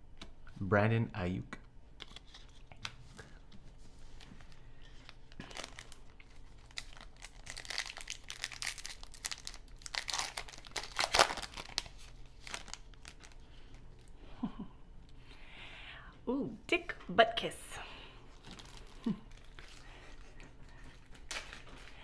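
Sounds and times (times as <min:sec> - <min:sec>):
wrapper tearing and crinkling: 0:04.3 - 0:14.1, 0:18.4 - 0:19.8.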